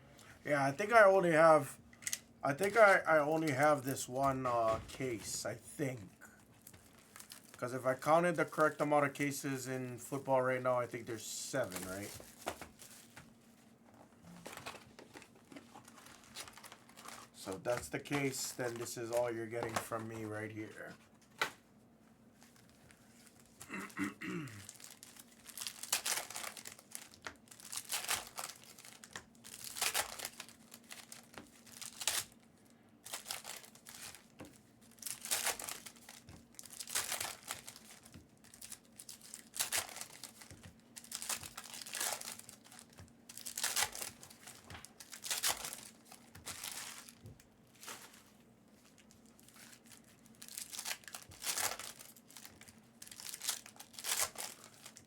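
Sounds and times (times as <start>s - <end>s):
faint steady hum: 0.0s - 55.0s
card packs tearing open: 11.6s - 13.1s, 14.4s - 20.3s, 24.6s - 32.4s, 33.0s - 34.3s, 34.9s - 47.2s, 48.9s - 55.0s.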